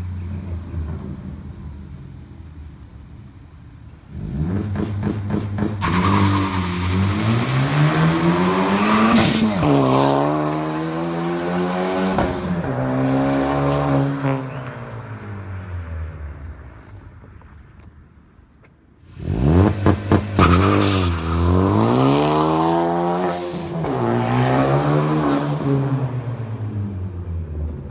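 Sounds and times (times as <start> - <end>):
car engine accelerating hard: 19.1 - 27.9.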